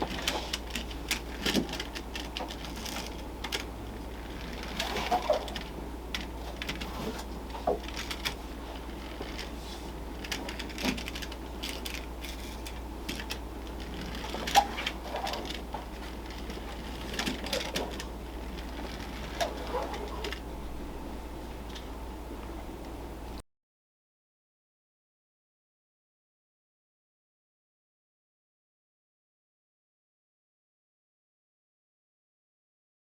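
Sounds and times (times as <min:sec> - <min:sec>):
steady low hum: 0:00.0 - 0:23.4
tin toy car clicking and rattling: 0:00.1 - 0:03.7, 0:07.8 - 0:08.4, 0:10.2 - 0:20.4.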